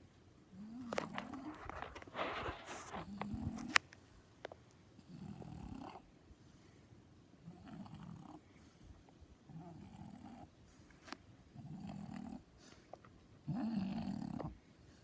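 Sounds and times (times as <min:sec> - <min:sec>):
dog snoring: 0:00.5 - 0:03.8, 0:05.0 - 0:06.2, 0:07.4 - 0:08.5, 0:09.5 - 0:10.6, 0:11.5 - 0:12.6, 0:13.4 - 0:15.0.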